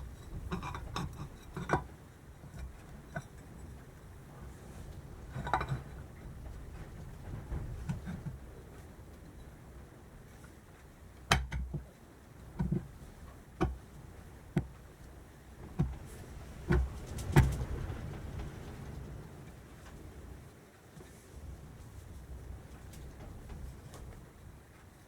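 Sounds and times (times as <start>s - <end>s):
metal engine parts knocking: 0.0s - 1.9s.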